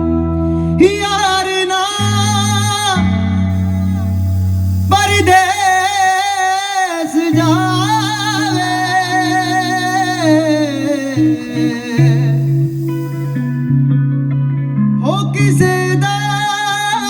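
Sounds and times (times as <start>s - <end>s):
man singing wavering held notes: 3.5s - 13.6s
low instrumental drone: 3.5s - 14.1s.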